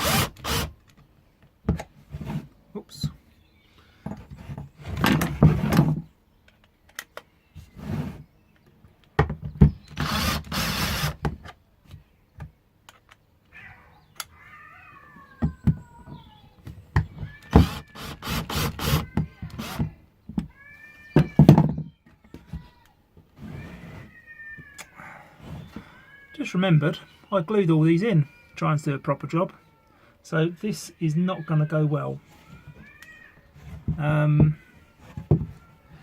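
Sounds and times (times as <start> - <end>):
knocks and clatter of wood and tools: 4.0 - 7.8, 8.6 - 10.0, 15.3 - 17.9, 21.2 - 23.6, 33.6 - 35.7
cat meowing: 13.5 - 16.4, 20.5 - 21.5, 23.5 - 26.5, 31.3 - 36.0.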